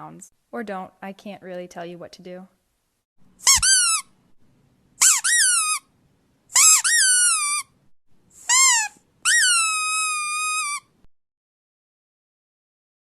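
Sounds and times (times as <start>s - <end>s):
squeaky dog toy squeaking: 3.4s - 4.2s, 5.0s - 5.9s, 6.5s - 7.8s, 8.4s - 11.0s.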